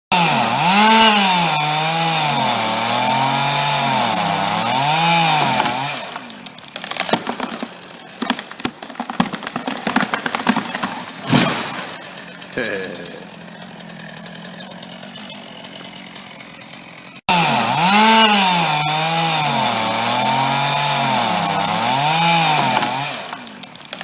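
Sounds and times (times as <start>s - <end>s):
chainsaw cutting wood: 0.1s - 24.0s
wood cracking and snapping: 0.7s - 12.6s, 17.8s - 24.0s.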